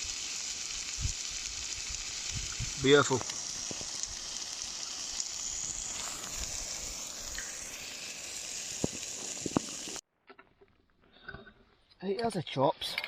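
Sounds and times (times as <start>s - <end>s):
meat sizzling in oil: 0.0s - 10.0s.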